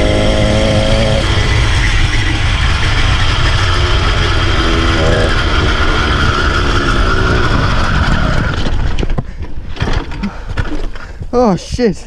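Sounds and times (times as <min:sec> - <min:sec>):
small motorbike engine running: 0:00.0 - 0:09.3.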